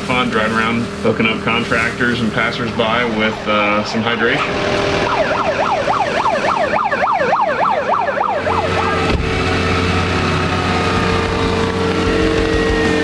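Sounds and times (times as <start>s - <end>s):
engine droning: 0.0s - 13.0s
siren yelping: 2.9s - 13.0s.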